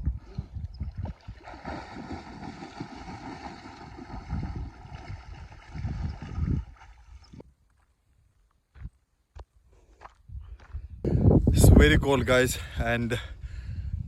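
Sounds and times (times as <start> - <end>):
wind buffeting microphone: 0.0 - 7.5, 10.2 - 14.0
rushing water: 1.0 - 7.2.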